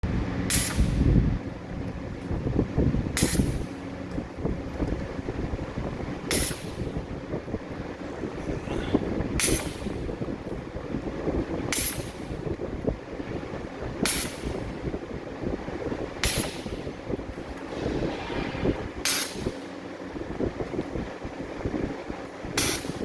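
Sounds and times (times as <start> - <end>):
low industrial rumble: 0.1 - 9.4, 16.8 - 22.5
stud welding crackle: 16.2 - 20.1.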